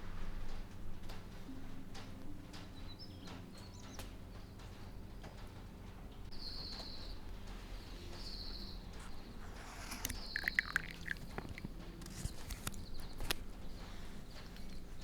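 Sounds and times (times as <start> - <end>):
bird chirping: 1.9 - 5.0, 6.3 - 15.0.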